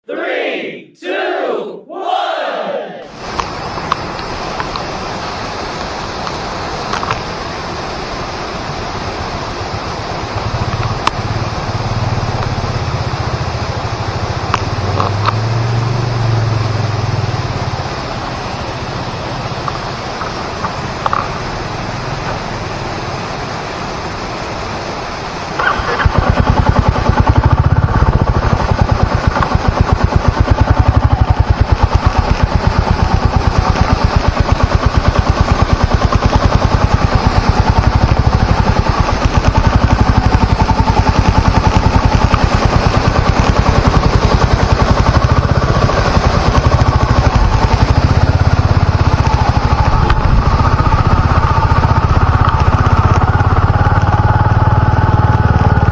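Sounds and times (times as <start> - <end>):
steady rushing noise: 1.4 - 55.9
motorcycle engine running: 10.1 - 22.4, 25.6 - 55.9.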